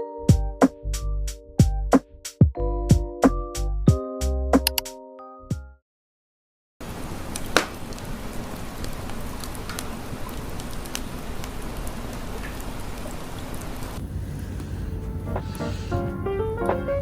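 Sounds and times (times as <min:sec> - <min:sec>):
campfire crackling and popping: 0:07.3 - 0:08.1.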